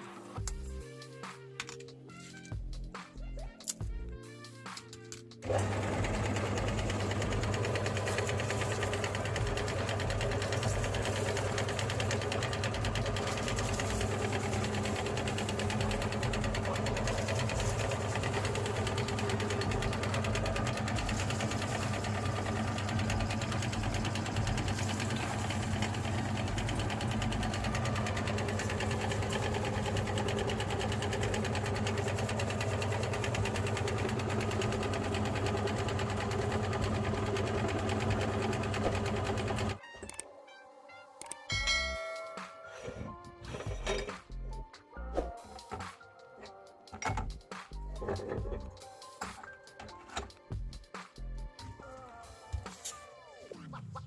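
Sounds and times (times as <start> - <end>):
electric meat grinder running: 5.4 - 39.8.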